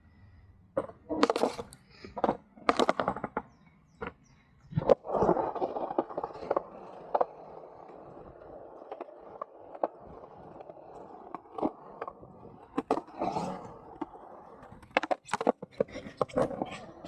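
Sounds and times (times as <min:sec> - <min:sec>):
skateboard wheels rolling: 0:00.7 - 0:17.0
skateboard clacking: 0:00.8 - 0:17.0.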